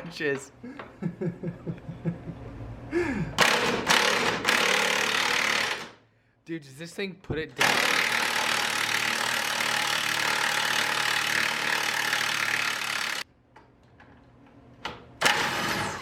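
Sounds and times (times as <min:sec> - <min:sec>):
impact wrench running: 0:03.4 - 0:06.0, 0:07.6 - 0:13.2.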